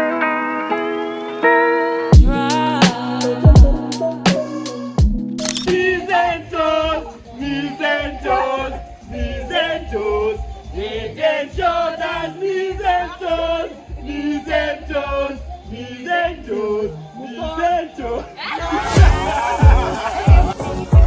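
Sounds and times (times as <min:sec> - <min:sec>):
group of voices singing: 0:00.0 - 0:21.0
deep bass pulse: 0:19.0 - 0:21.0.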